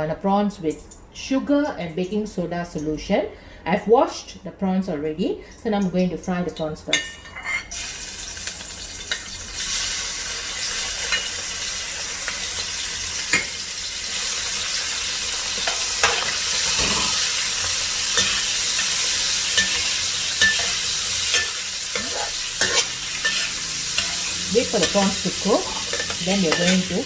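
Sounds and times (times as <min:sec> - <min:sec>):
prawns sizzling in hot oil: 0:06.9 - 0:27.0
utensil scraping pan: 0:15.6 - 0:27.0.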